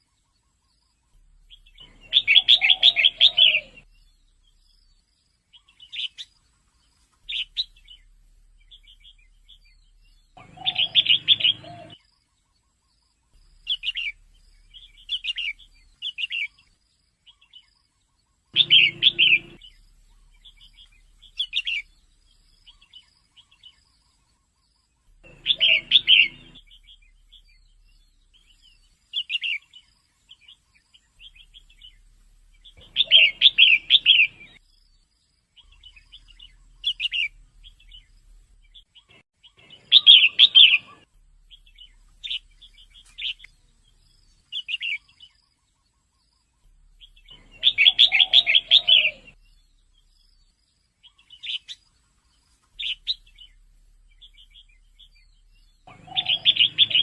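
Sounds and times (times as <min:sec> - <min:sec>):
bird chattering calls: 0:01.8 - 0:03.9, 0:10.4 - 0:12.0, 0:18.6 - 0:21.9, 0:25.2 - 0:27.5, 0:32.7 - 0:34.6, 0:47.1 - 0:49.4, 0:55.8 - 0:57.0
short bird chirps: 0:18.5 - 0:57.0.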